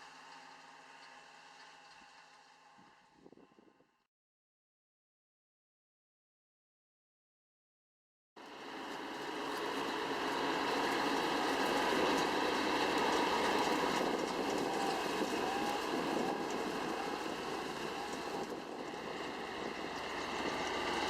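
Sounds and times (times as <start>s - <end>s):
tractor running: 0.0s - 3.4s, 8.4s - 21.0s.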